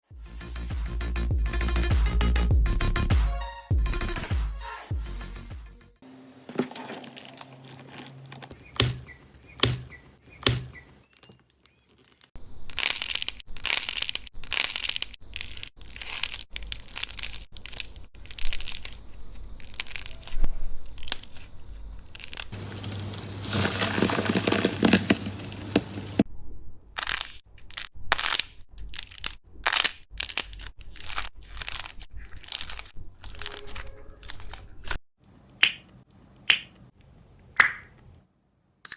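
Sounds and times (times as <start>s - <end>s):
slime crackling when squeezed: 11.7s - 21.5s.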